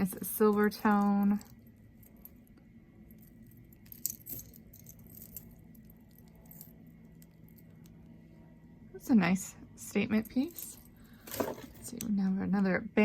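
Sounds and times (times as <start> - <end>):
necklace pieces clinking and jangling: 0.0 - 8.0, 9.8 - 12.2.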